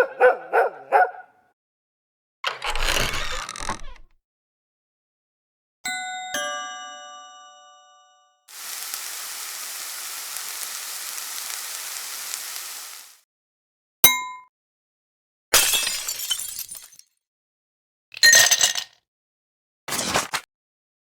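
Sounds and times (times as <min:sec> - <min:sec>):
steady hiss: 0:08.5 - 0:13.2
glass breaking crash: 0:15.6 - 0:17.0.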